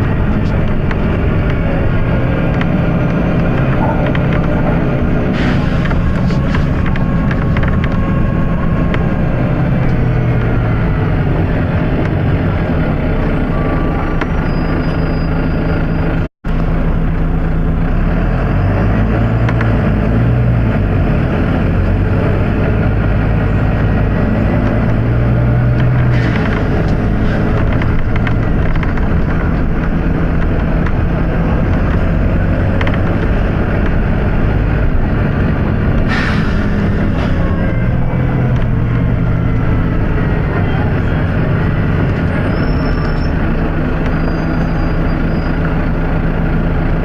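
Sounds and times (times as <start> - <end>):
bus diesel engine running: 0.0 - 47.0.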